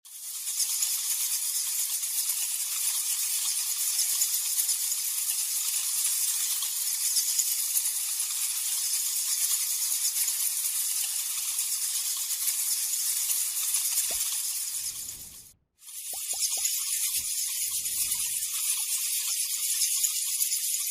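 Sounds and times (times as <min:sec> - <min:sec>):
bats chittering: 0:12.1 - 0:20.8.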